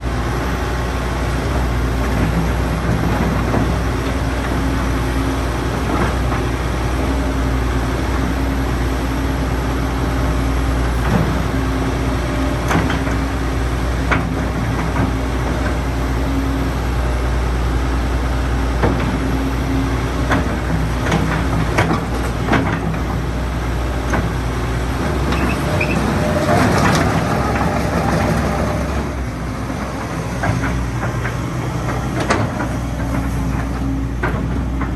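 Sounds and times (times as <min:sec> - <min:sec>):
excavator diesel engine running: 0:00.0 - 0:34.9.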